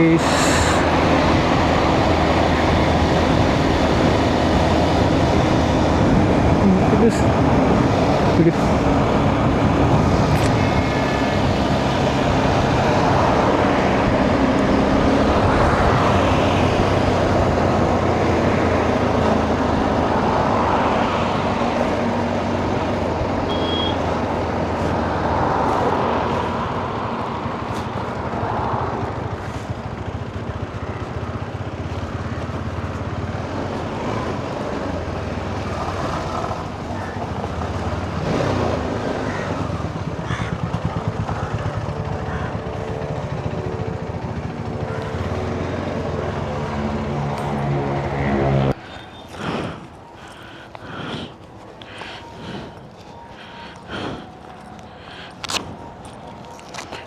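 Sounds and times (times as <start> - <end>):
wind rushing over microphone: 0.0 - 23.5
motorcycle engine running: 0.0 - 57.0
traffic: 0.0 - 57.0.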